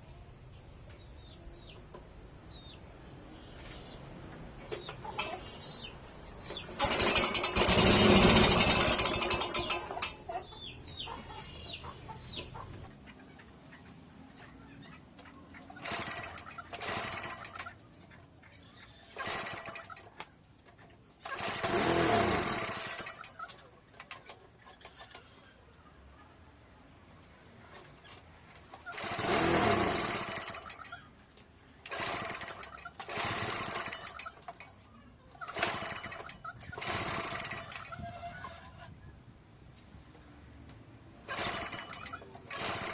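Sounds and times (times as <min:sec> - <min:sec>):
lawn mower engine cranking: 0:04.6 - 0:05.6, 0:06.4 - 0:10.6, 0:15.7 - 0:17.9, 0:19.0 - 0:20.2, 0:21.2 - 0:24.4, 0:28.7 - 0:31.0, 0:31.8 - 0:34.7, 0:35.5 - 0:38.9, 0:41.2 - 0:42.9
engine catching and misfiring: 0:06.6 - 0:10.3.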